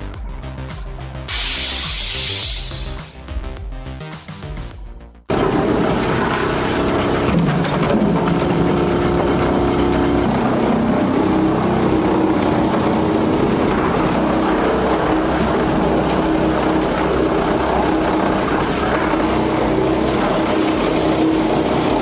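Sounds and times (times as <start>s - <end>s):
heavy machine engine running: 5.3s - 22.0s.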